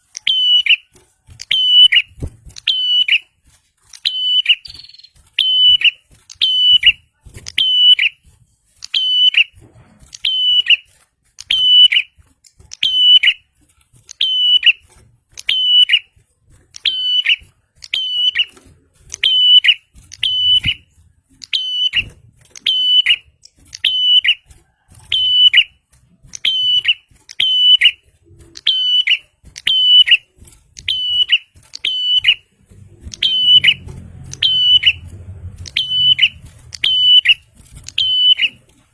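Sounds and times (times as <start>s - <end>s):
bird calling sharp high notes: 33.1s - 37.4s, 38.0s - 38.6s.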